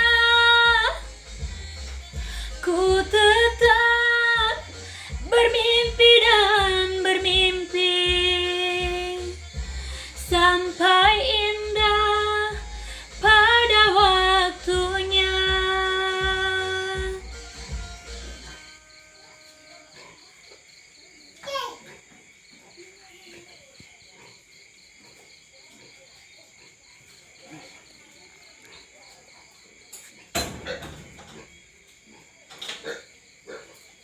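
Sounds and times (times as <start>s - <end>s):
woman singing slow melody: 0.0s - 17.8s
singer breathing: 1.1s - 2.6s, 4.7s - 5.2s, 9.5s - 10.2s, 12.6s - 13.2s.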